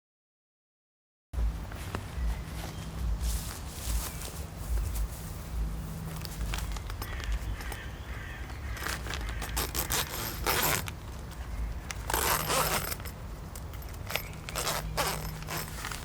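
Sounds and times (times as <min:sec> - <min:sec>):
zipper being pulled open: 0:08.8 - 0:16.0.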